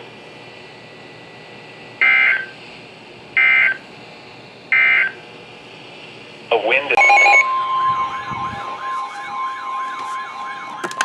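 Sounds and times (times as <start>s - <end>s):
warbling data tone bursts: 6.9s - 11.0s.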